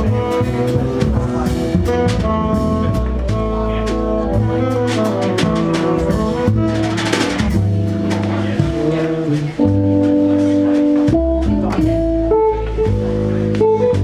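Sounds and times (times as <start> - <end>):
held horn notes: 0.0 - 10.9
drum kit and cymbals: 0.0 - 14.0
low bass line: 0.0 - 14.0.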